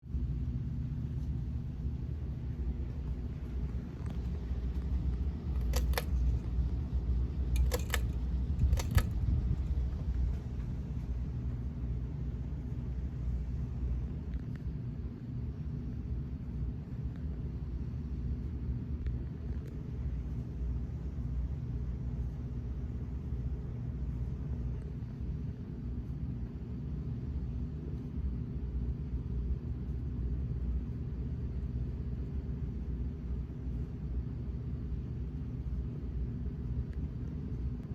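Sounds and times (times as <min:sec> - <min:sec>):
ceiling fan running: 0:00.0 - 0:37.9
quick double clicks: 0:05.5 - 0:06.2, 0:07.6 - 0:09.2.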